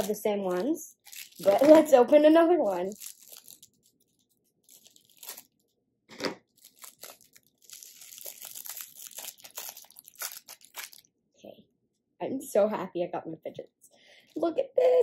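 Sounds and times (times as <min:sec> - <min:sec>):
plastic packaging crinkling and tearing: 0:00.0 - 0:11.1.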